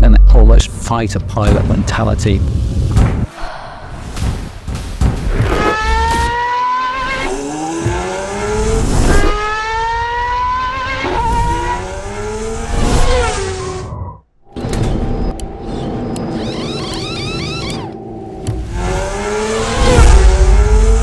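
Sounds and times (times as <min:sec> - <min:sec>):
racing car engine accelerating: 0:05.4 - 0:21.0.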